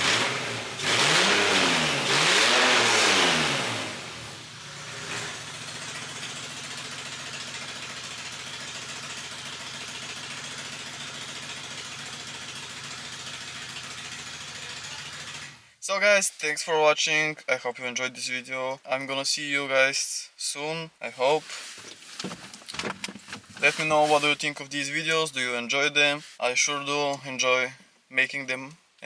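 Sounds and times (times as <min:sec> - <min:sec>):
car engine revving and idling: 0:00.0 - 0:15.7.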